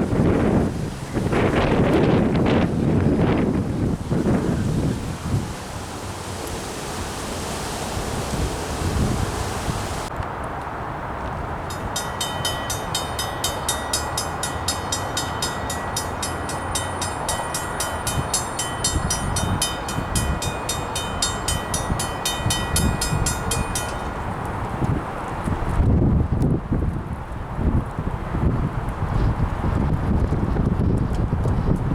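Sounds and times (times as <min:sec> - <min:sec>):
train rumbling: 0:11.4 - 0:25.4
bell ringing fast: 0:11.7 - 0:24.2.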